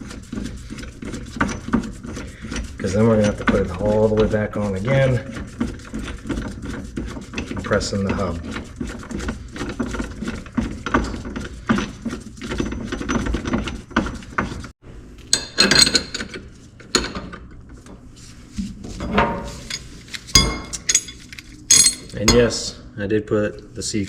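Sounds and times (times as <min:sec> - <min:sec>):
metal tool parts clinking: 0:19.7 - 0:22.5.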